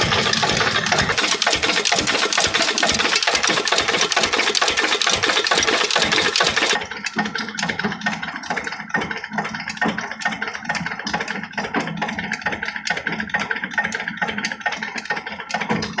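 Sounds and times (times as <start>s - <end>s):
lathe humming: 0.0s - 6.8s
rattling clatter: 0.0s - 11.4s.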